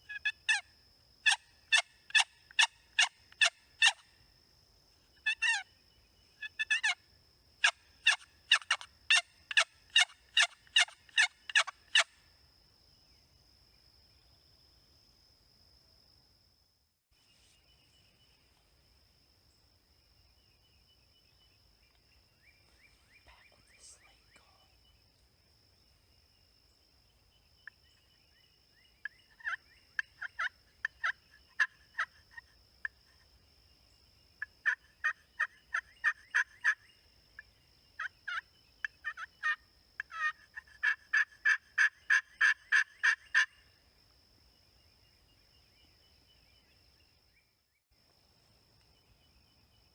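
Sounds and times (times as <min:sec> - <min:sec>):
high insect whine: 0:00.0 - 0:49.9
turkey yelping: 0:10.0 - 0:11.7, 0:39.1 - 0:43.5.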